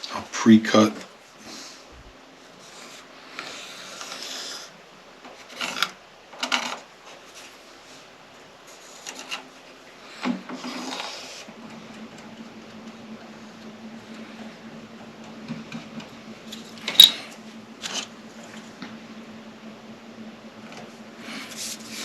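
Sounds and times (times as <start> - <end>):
hand tool scraping wood: 10.3 - 11.5.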